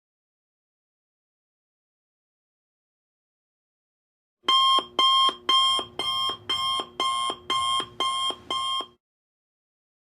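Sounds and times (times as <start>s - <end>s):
repeating electronic alarm: 4.5s - 8.9s.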